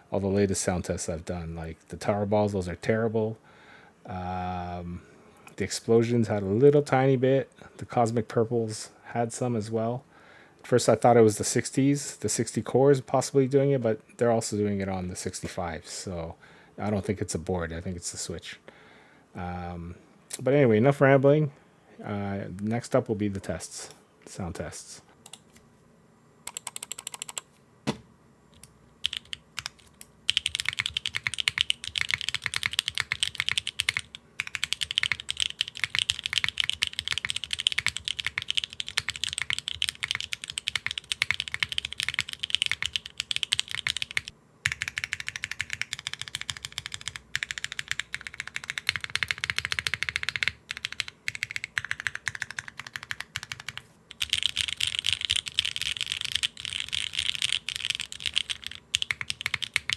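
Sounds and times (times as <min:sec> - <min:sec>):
mechanical keyboard typing: 0:26.5 - 0:27.4, 0:29.0 - 0:59.9.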